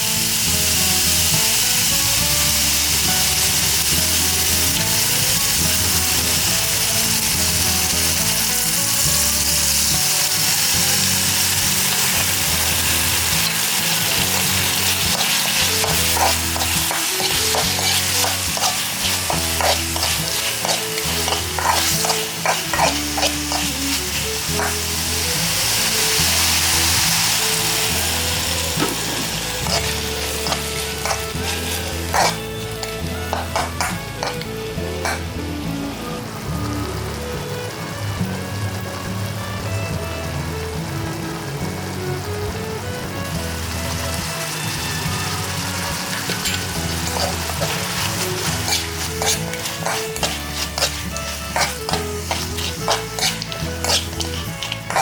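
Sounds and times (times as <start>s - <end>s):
chicken sizzling in a pan: 0.0s - 55.0s
spatula scraping a pan: 8.0s - 35.3s, 44.6s - 55.0s.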